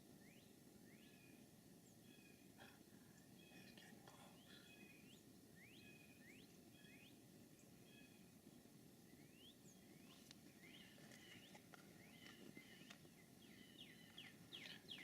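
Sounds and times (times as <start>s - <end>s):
faint songbirds chirping: 0.0s - 15.0s
faint ticks: 10.1s - 10.4s.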